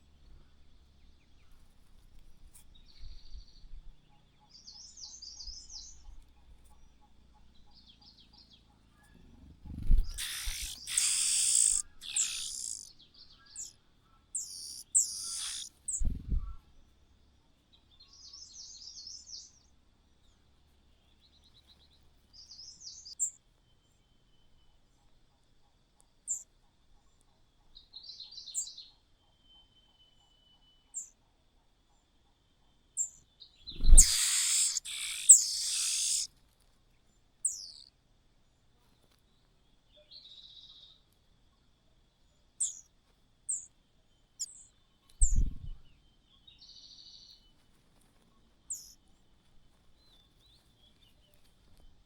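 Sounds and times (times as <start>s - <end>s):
birds chirping: 0.0s - 17.0s, 33.0s - 36.3s, 37.0s - 37.9s, 42.6s - 42.9s, 43.5s - 51.9s.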